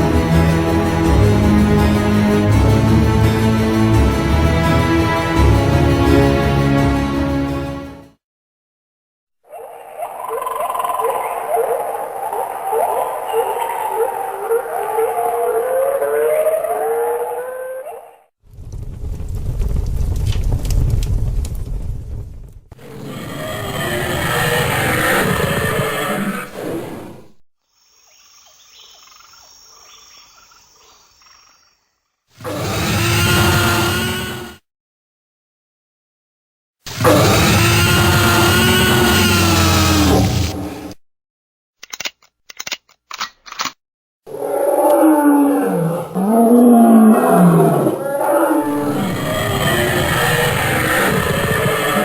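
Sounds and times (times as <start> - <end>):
animal ambience: 9.5 - 18.3, 22.8 - 31.7, 44.3 - 52.0
dinosaur roar: 22.8 - 27.4, 32.4 - 34.6, 36.9 - 41.0, 44.3 - 52.0.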